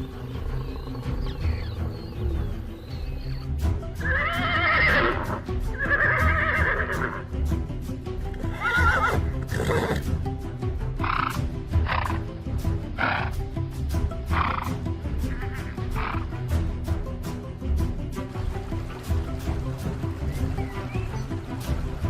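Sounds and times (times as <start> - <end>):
background music: 0.0 - 22.0
horses whinnying: 4.0 - 7.3, 8.3 - 10.1, 13.0 - 13.4, 14.3 - 16.3.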